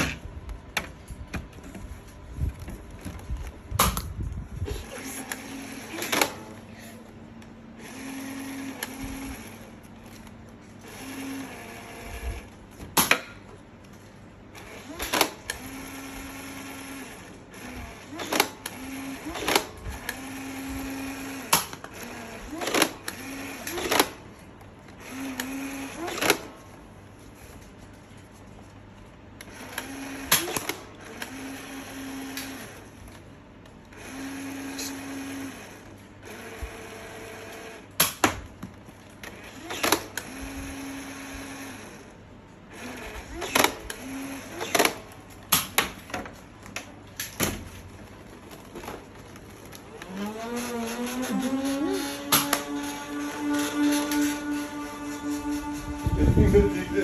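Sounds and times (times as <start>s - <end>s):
toy blaster motors whirring: 4.7s - 6.6s, 7.8s - 9.7s, 10.8s - 12.5s, 14.6s - 24.2s, 25.0s - 26.6s, 34.0s - 38.2s, 39.2s - 42.0s, 42.7s - 45.7s, 49.6s - 57.0s.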